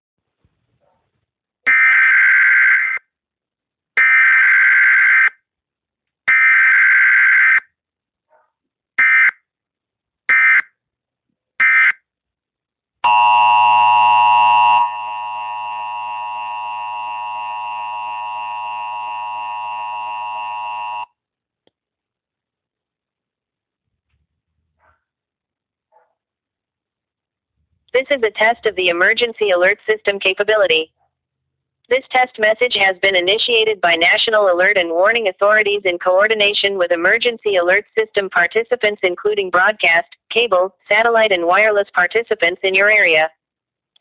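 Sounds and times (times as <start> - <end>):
steady two-tone attention signal: 13.0 - 21.1.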